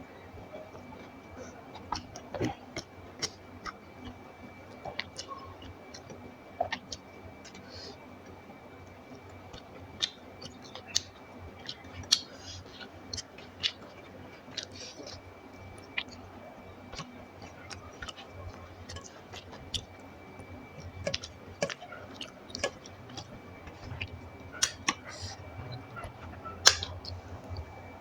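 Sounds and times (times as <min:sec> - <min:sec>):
soft chewing: 0:00.0 - 0:28.0
mouth clicks and smacks: 0:09.1 - 0:16.3, 0:16.9 - 0:27.8.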